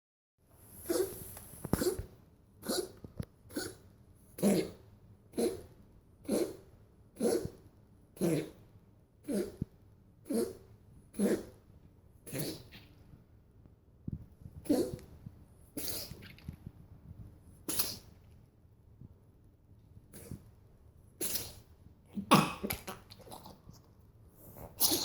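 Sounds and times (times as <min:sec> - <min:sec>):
cat wheezing: 0:09.2 - 0:09.7, 0:15.8 - 0:16.3, 0:17.7 - 0:18.1, 0:20.1 - 0:20.4, 0:21.2 - 0:21.7.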